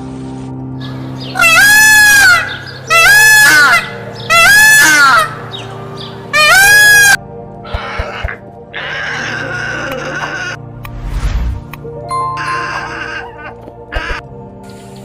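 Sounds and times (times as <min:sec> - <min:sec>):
background music: 0:00.0 - 0:15.0
fowl calling: 0:00.8 - 0:10.6, 0:12.4 - 0:14.2.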